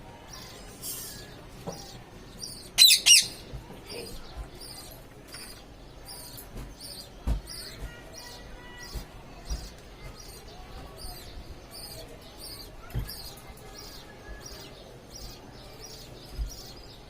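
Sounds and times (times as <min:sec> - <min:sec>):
parrot calling loudly: 0:02.8 - 0:03.4.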